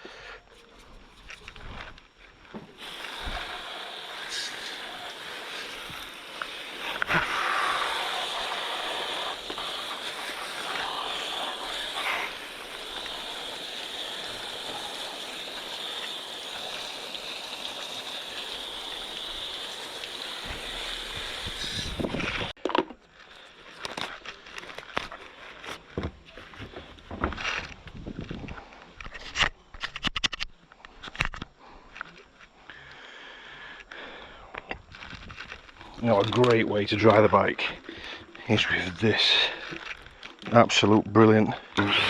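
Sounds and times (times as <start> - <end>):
water spraying hiss: 2.6 - 22.6, 35.8 - 40.8, 41.6 - 42.0.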